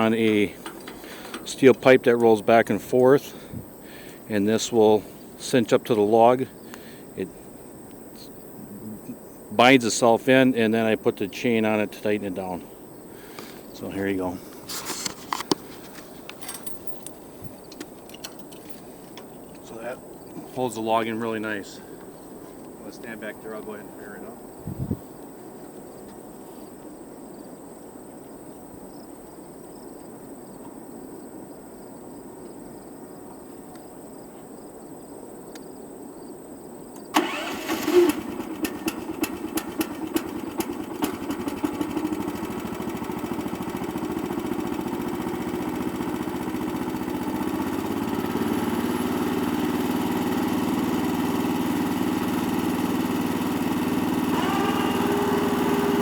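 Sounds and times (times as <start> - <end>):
engine running steadily: 0.1 - 2.0, 37.2 - 56.0
engine starting with sharp pops: 0.2 - 3.2, 37.0 - 56.0.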